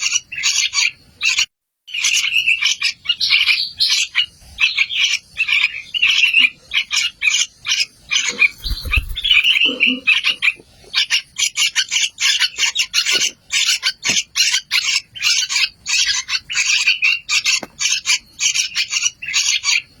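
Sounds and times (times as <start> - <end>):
nestlings begging chirps: 0.0 - 20.0.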